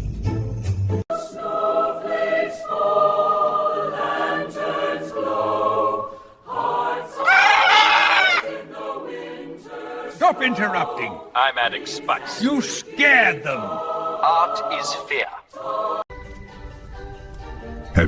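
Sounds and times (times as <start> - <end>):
choir singing a carol: 1.1 - 18.0
shrill wavering voice: 7.1 - 8.5.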